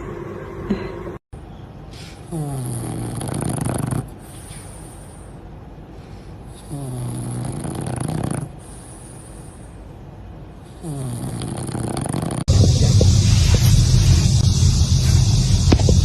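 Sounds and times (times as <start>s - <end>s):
pet snoring: 2.2s - 5.4s, 6.5s - 9.6s, 10.7s - 12.5s.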